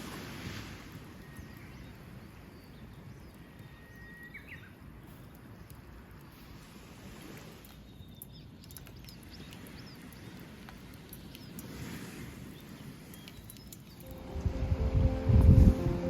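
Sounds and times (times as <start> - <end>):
low rumble of surf: 0.0 - 8.6, 9.2 - 16.0
small birds chirping: 7.6 - 14.2
music: 14.0 - 16.0.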